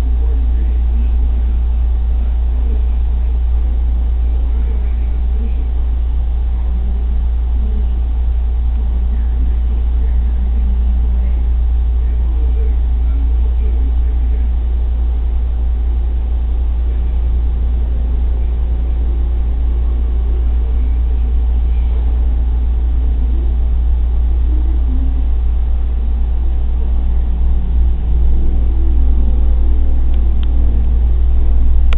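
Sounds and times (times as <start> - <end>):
steady low rumble: 0.0 - 31.9.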